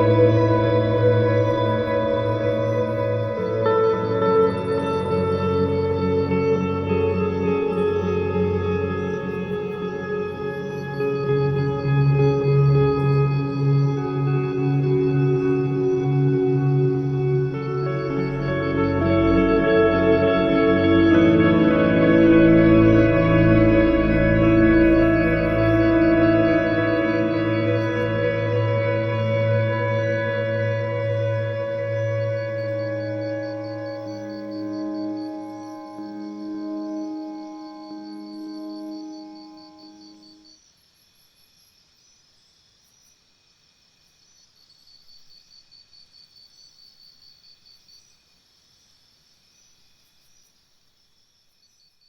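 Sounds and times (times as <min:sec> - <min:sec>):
slow ambient organ music: 0:00.0 - 0:40.4
insects chirping: 0:00.0 - 0:52.0
low hiss: 0:00.0 - 0:52.0.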